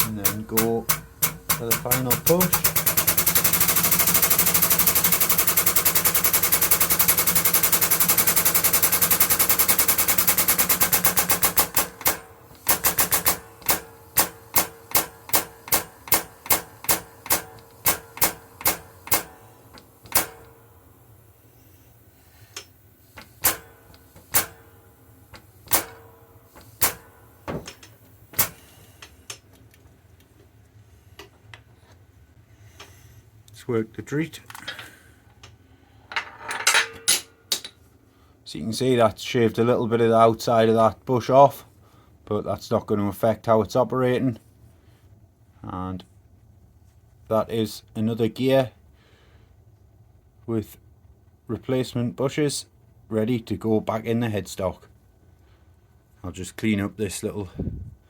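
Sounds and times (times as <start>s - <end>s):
air-powered press hammering: 0.0s - 20.9s, 21.5s - 29.4s.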